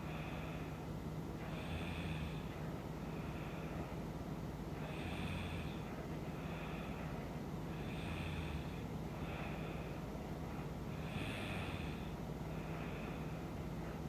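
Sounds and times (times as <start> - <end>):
woman snoring: 1.6 - 2.5, 4.8 - 5.8, 7.8 - 8.8, 11.0 - 12.1.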